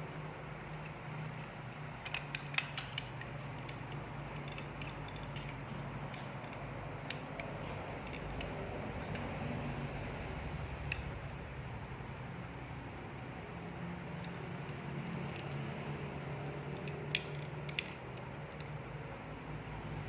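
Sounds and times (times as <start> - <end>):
steady low hum: 0.0 - 20.0
plastic clicks and rattles: 0.7 - 9.3, 16.4 - 18.8.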